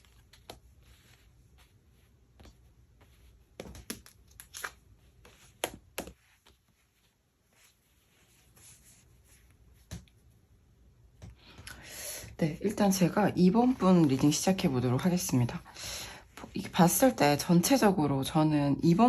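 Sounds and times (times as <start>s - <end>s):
cards rustling on a table: 0.0s - 10.3s.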